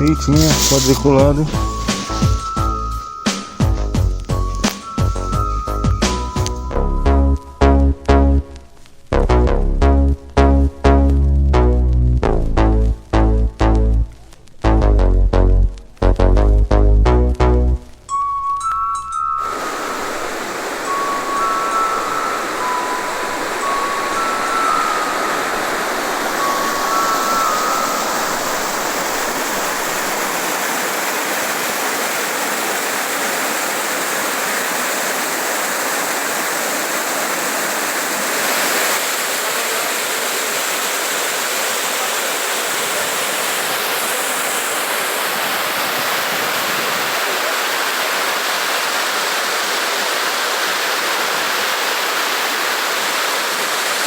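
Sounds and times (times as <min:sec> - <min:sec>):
waterfall rushing: 0:00.0 - 0:06.6, 0:18.2 - 0:54.0
short high melody notes: 0:00.0 - 0:08.7, 0:18.1 - 0:30.4.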